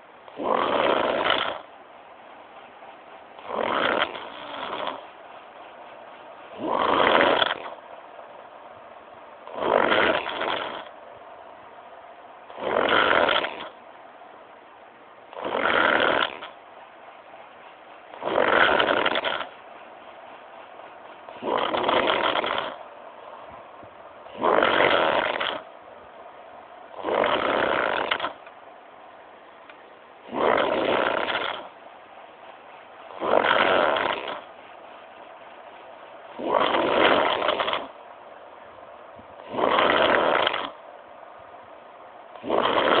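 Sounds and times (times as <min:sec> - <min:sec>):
person snoring: 0:00.4 - 0:01.6, 0:03.4 - 0:05.0, 0:06.6 - 0:07.8, 0:09.5 - 0:10.9, 0:12.6 - 0:13.7, 0:15.4 - 0:16.5, 0:24.3 - 0:25.6, 0:42.4 - 0:43.0.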